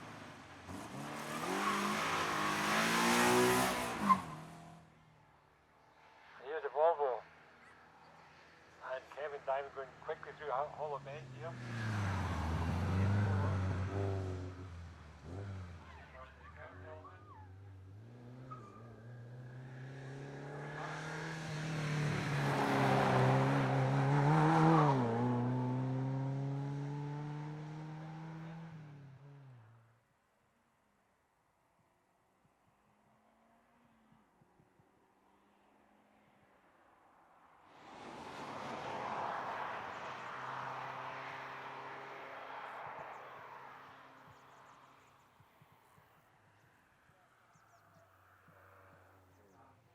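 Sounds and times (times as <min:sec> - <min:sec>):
car engine passing at speed: 0:00.0 - 0:05.0, 0:09.2 - 0:29.8, 0:37.7 - 0:46.8.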